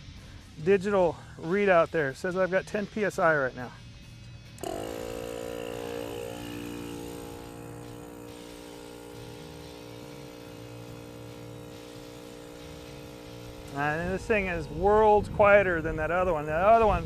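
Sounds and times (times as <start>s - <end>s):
air compressor humming: 4.6s - 17.0s.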